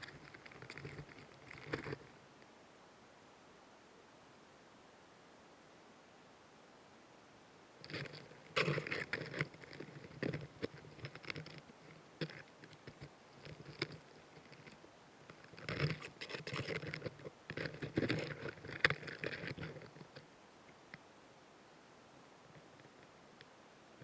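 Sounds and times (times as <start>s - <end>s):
insect crackling and scratching: 0.0s - 2.2s, 7.8s - 20.3s.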